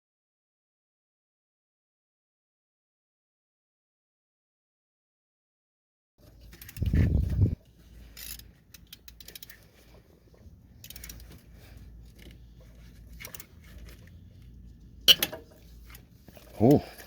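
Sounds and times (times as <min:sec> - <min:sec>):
metal tools clicking and clinking: 0:06.2 - 0:09.8, 0:10.8 - 0:14.1, 0:15.1 - 0:17.0
sharp metallic clack: 0:15.1 - 0:15.5.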